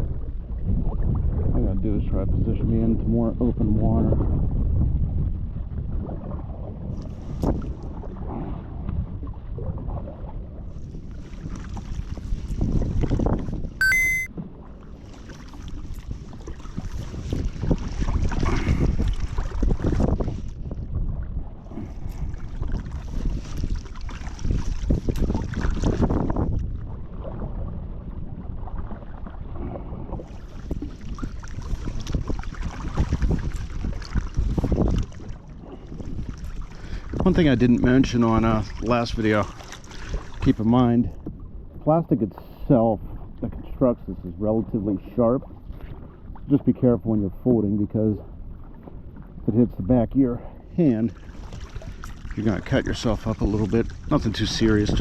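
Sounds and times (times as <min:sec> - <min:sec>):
wind buffeting microphone: 0:00.0 - 0:13.8, 0:15.8 - 0:41.8, 0:51.3 - 0:55.0
high-pitched tone: 0:13.8 - 0:14.3
gusty wind buffeting microphone: 0:24.4 - 0:28.9
water sloshing: 0:38.7 - 0:40.5, 0:51.1 - 0:53.7.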